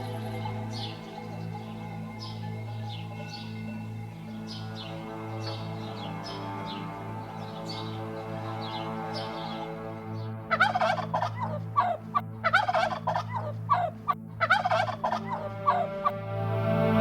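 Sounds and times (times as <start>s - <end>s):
background music: 0.0s - 17.0s
bird calling in gabbling bursts: 10.5s - 16.1s.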